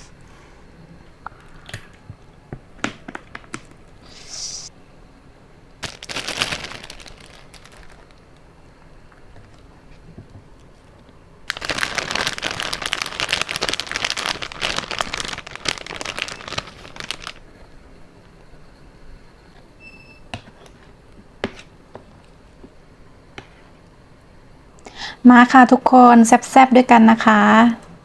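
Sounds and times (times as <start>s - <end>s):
plastic packaging crinkling: 5.8s - 8.5s, 10.8s - 17.8s.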